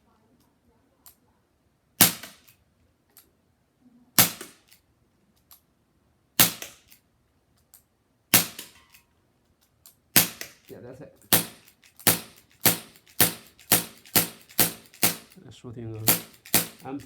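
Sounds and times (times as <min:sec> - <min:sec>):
air revolver shots: 0:02.0 - 0:02.5, 0:04.2 - 0:04.7, 0:06.4 - 0:06.9, 0:08.3 - 0:08.8, 0:10.2 - 0:10.7, 0:11.3 - 0:15.4, 0:16.0 - 0:17.0.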